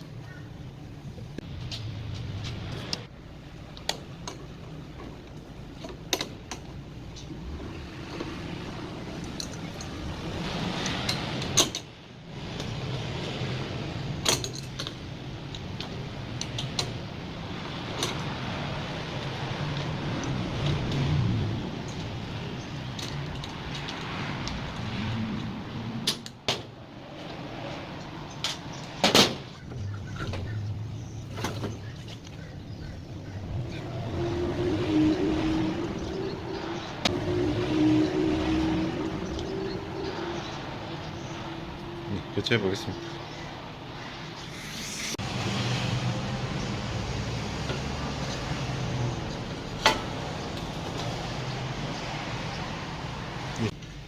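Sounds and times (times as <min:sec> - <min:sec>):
clinks of parts and tools: 0:09.2 - 0:10.0, 0:14.2 - 0:17.0
steady low hum: 0:29.4 - 0:45.2
steady motor tone: 0:33.1 - 0:43.7.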